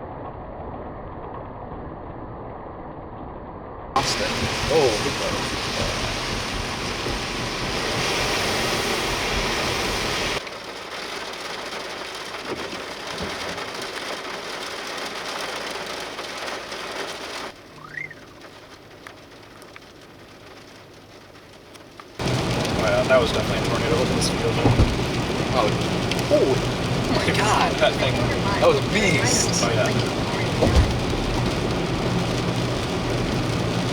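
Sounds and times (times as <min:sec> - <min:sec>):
heavy rain hiss: 0:04.0 - 0:33.9
rising whistle: 0:17.8 - 0:18.2.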